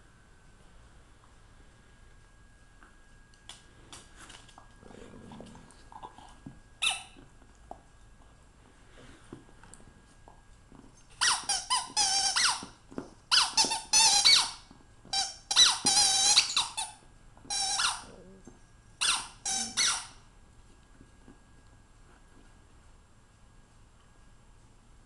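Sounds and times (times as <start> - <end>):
squeaky toy squeaking: 6.8 - 7.2, 11.2 - 12.6, 13.3 - 14.6, 15.2 - 18.1, 19.0 - 20.2.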